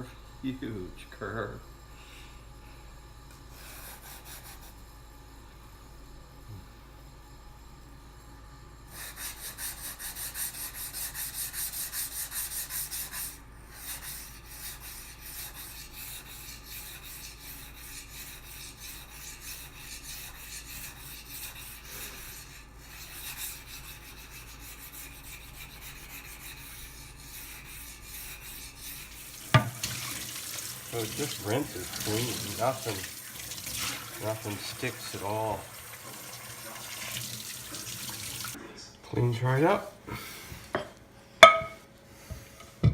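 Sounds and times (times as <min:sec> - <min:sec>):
knife scraping on whetstone: 0:10.4 - 0:33.6.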